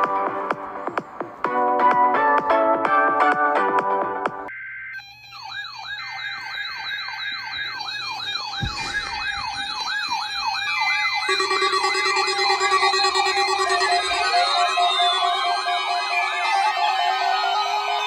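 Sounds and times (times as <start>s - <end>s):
electronic siren yelping: 4.5s - 18.0s
steady siren tones: 4.5s - 18.0s
higher faster warble: 8.6s - 17.3s.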